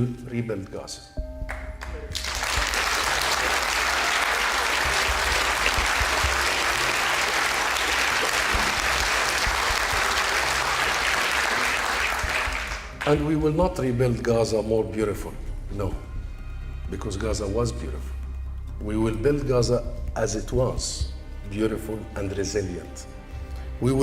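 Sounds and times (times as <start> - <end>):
audience applauding: 1.5 - 13.2.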